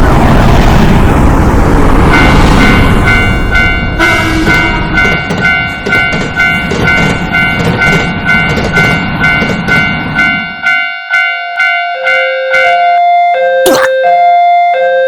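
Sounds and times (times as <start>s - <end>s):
train rumble: 0.0s - 11.8s
railroad crossing bell ringing: 2.1s - 13.4s.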